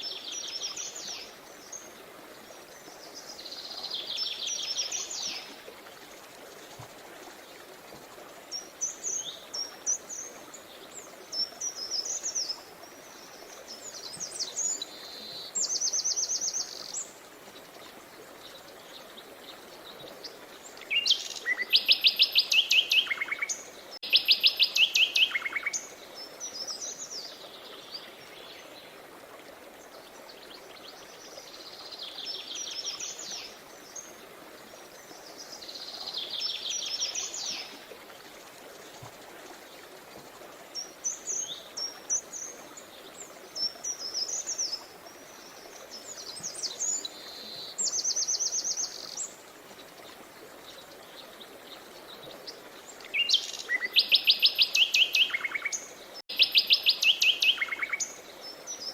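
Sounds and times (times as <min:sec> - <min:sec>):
flowing river water: 0:00.0 - 0:58.9
songbirds singing: 0:08.5 - 0:29.0, 0:39.7 - 0:58.9.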